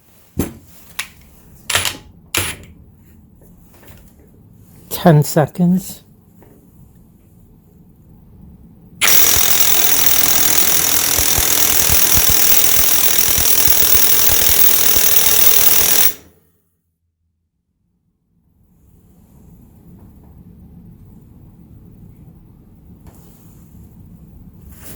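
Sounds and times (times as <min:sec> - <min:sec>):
impact wrench hammering: 0:09.0 - 0:16.2.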